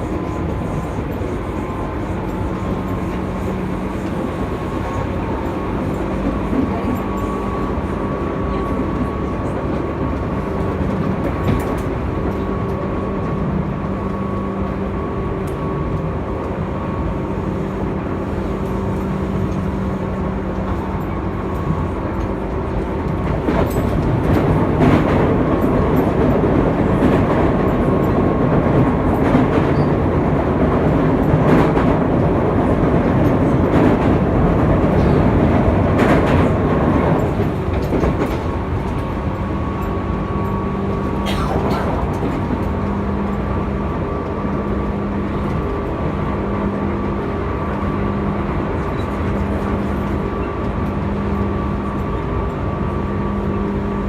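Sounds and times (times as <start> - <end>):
electric train whine: 0.0 - 54.0
wheel and rail noise: 0.0 - 54.0
sharp clicks from rails: 17.4 - 52.7.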